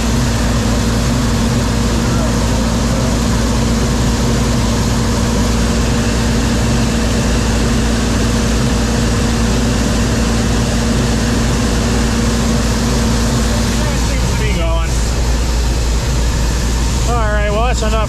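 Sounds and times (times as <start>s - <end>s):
combine harvester running: 0.0s - 18.0s.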